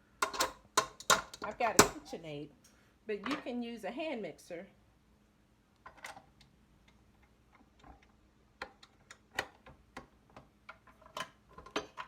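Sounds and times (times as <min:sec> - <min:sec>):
kitchen equipment clicks and knocks: 0:00.2 - 0:02.1, 0:10.7 - 0:12.0.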